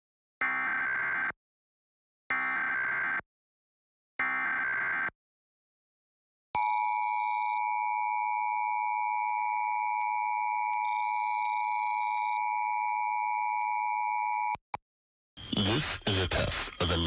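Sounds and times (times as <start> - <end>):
steady two-tone alert: 15.4 - 17.0.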